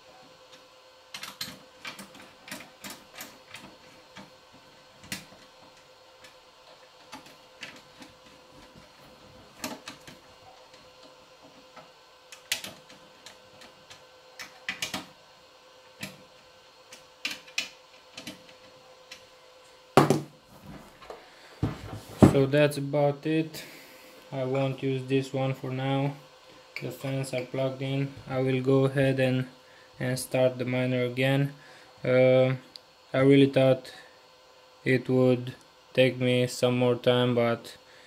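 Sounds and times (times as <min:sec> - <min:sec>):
faint steady hum: 0:00.0 - 0:38.0
clicks and knocks of parts: 0:00.5 - 0:04.3, 0:05.0 - 0:15.1, 0:16.9 - 0:19.3.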